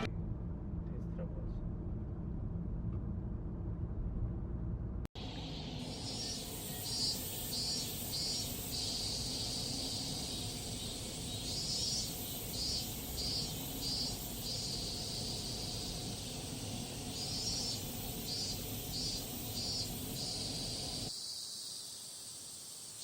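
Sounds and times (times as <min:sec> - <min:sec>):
cicadas buzzing: 0:05.2 - 0:23.0.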